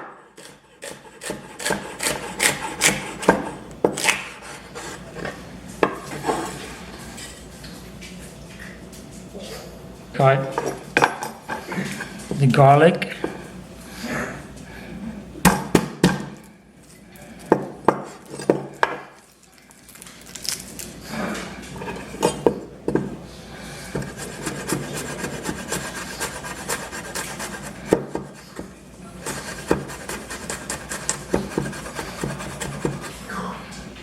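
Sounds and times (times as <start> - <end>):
knife chopping on cutting board: 0.0 - 4.6, 23.9 - 33.2.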